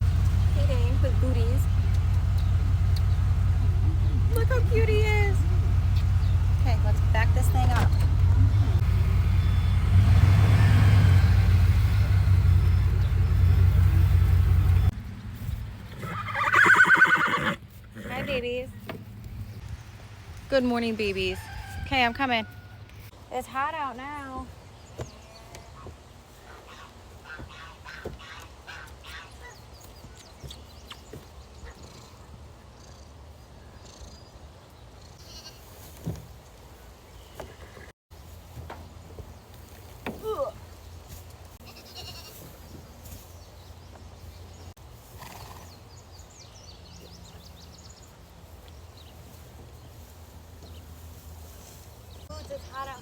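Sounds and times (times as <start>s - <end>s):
farm animals calling: 0.0s - 14.9s, 15.8s - 18.6s, 25.1s - 29.6s, 35.2s - 35.7s, 41.6s - 42.6s
low steady rumble: 0.0s - 16.0s
vehicle engine rumbling: 0.0s - 23.2s, 37.1s - 45.0s, 46.0s - 53.0s.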